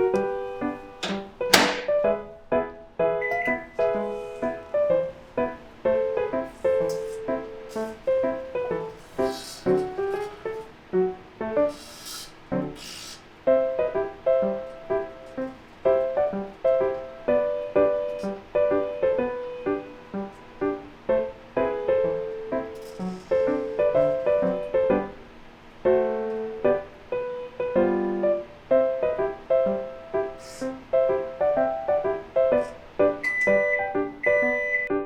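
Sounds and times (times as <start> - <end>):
piano melody: 0.0 - 35.0
faint short hisses: 6.4 - 8.2, 8.9 - 10.6, 11.7 - 13.3, 22.8 - 24.4, 30.2 - 30.9.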